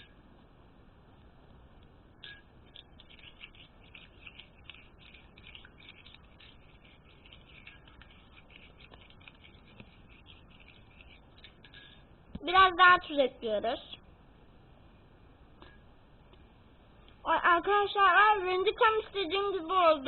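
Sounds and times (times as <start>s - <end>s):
spoon scratching in a bowl: 2.2s - 12.0s.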